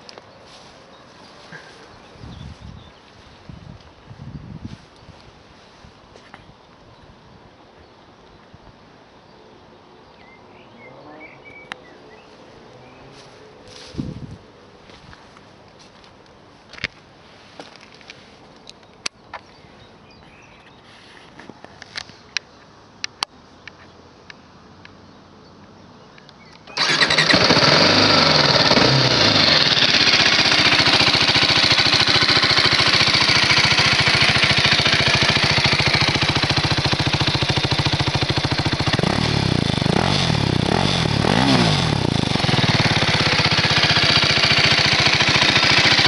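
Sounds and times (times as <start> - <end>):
motorcycle engine idling and revving: 26.7 - 46.0.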